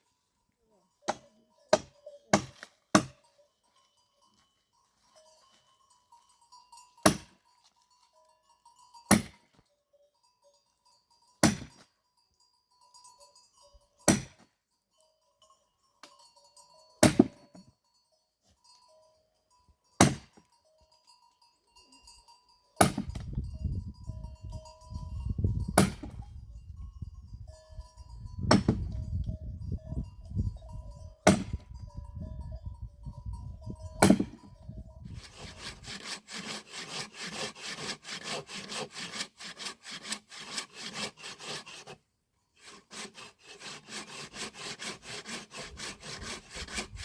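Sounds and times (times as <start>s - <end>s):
axe chopping firewood: 1.1s - 3.2s, 7.0s - 7.3s, 9.1s - 9.4s, 11.4s - 11.8s, 14.1s - 14.4s, 17.0s - 17.5s, 20.0s - 20.4s, 22.8s - 23.3s, 25.8s - 26.2s, 28.5s - 29.0s, 31.2s - 31.7s, 34.0s - 34.4s.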